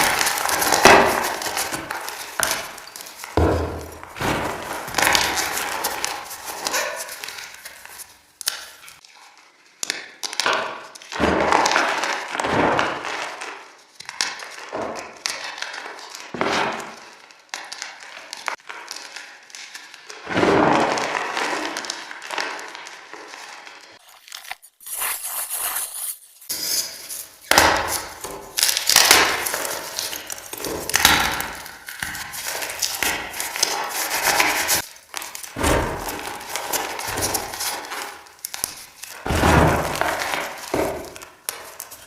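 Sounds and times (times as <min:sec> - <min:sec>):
chalk crunching and crumbling: 0:00.0 - 0:09.0, 0:24.0 - 0:42.0.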